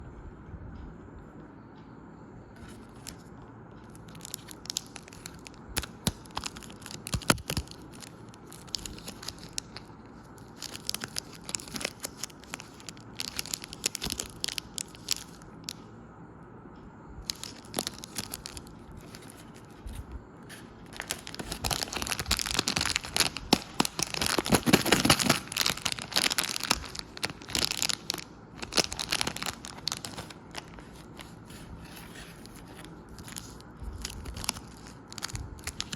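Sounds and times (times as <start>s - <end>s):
wrappers tearing and crinkling: 4.0s - 15.5s, 17.3s - 35.9s.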